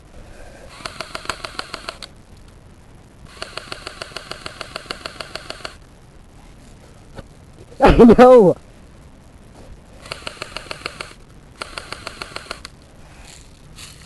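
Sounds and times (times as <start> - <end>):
airsoft gun firing bursts: 0.8 - 2.0, 3.3 - 5.8, 10.0 - 12.7.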